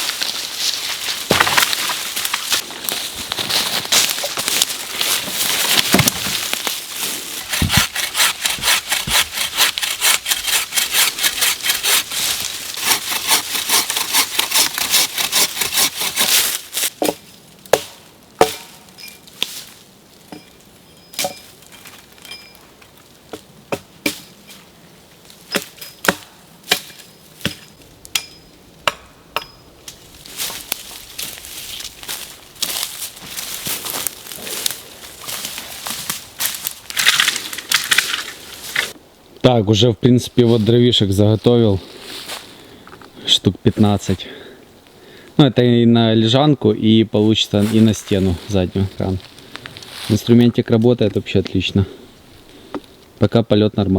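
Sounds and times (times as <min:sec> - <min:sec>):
wood knocks and snaps: 0:05.7 - 0:06.4
saw cutting through wood: 0:07.3 - 0:16.6.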